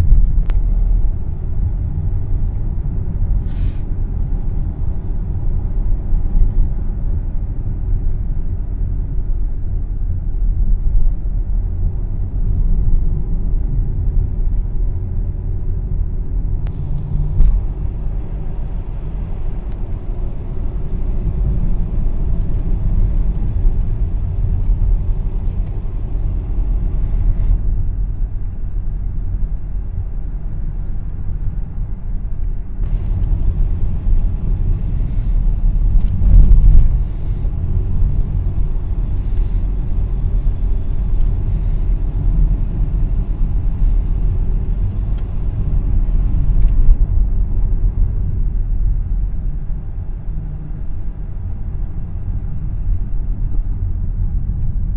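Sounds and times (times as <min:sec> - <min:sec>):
vehicle rumbling along road: 0:00.0 - 0:54.9
hiss: 0:03.4 - 0:03.9.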